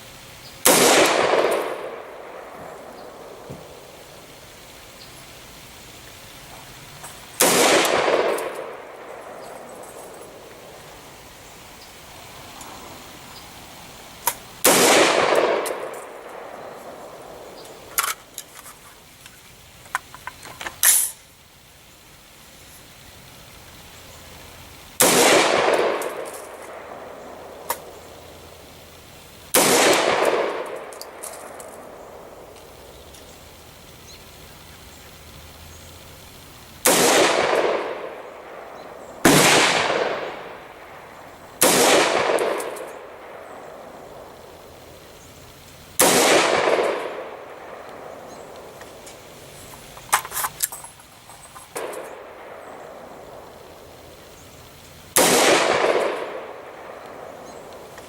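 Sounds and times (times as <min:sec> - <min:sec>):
gunshots with echo: 0:00.6 - 0:04.2, 0:07.4 - 0:10.8, 0:14.6 - 0:17.9, 0:25.0 - 0:28.1, 0:29.5 - 0:32.5, 0:36.8 - 0:44.3, 0:46.0 - 0:48.8, 0:55.1 - 0:57.9.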